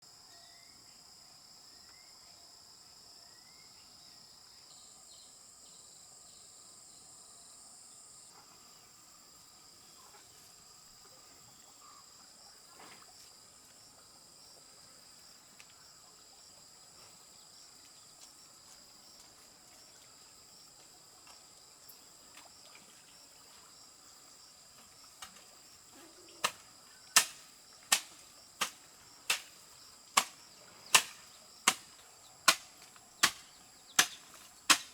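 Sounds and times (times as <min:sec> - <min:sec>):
crickets shrilling: 0:21.6 - 0:34.9
sharp chopping strikes: 0:26.4 - 0:29.6, 0:30.2 - 0:34.9.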